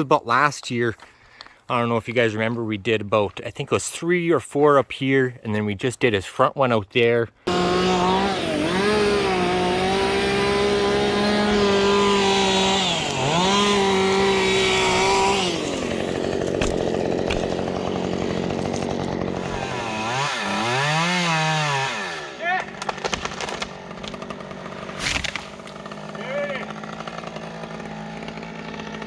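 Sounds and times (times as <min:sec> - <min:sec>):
chainsaw running at high revs: 0:07.5 - 0:29.0.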